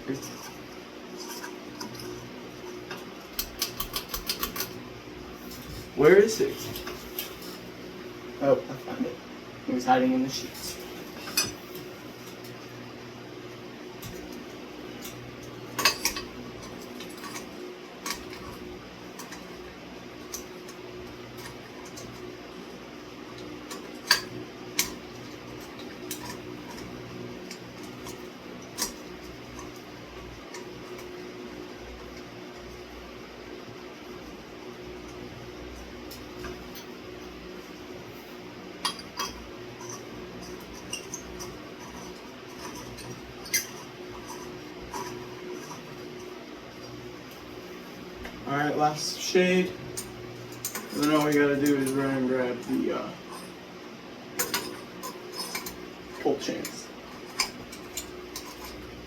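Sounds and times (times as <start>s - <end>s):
steady low hum: 0.0s - 59.0s
glass shades clinking against metal: 38.8s - 46.9s, 49.9s - 53.6s, 54.4s - 58.9s.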